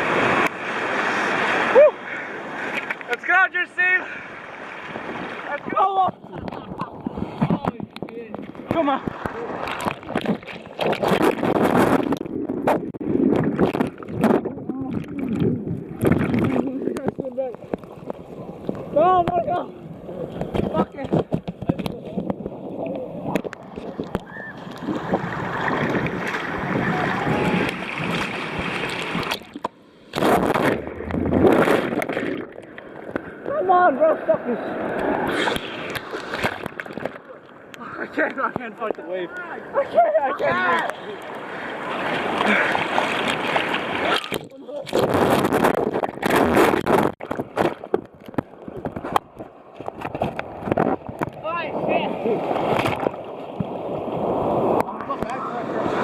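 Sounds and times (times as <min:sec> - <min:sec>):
ocean surf washing: 0:00.0 - 0:56.0.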